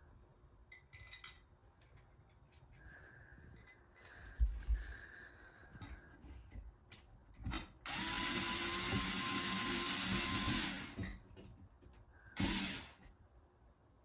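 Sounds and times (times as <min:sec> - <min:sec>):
electric drill-driver motor: 0:07.8 - 0:11.1, 0:12.4 - 0:13.0.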